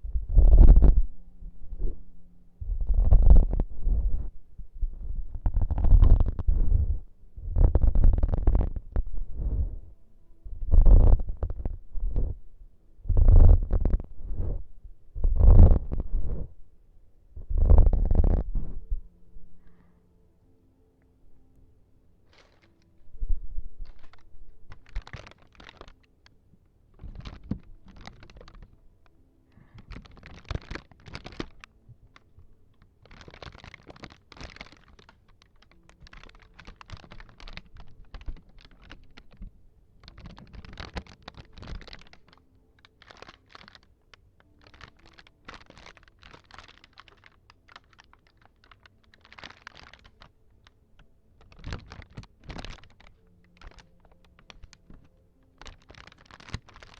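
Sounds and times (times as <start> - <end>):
tapping and scratching props: 2.6 - 4.3, 4.9 - 9.8, 13.1 - 14.6, 17.4 - 18.8, 22.3 - 22.8, 23.8 - 26.1, 27.0 - 50.8, 51.4 - 56.9.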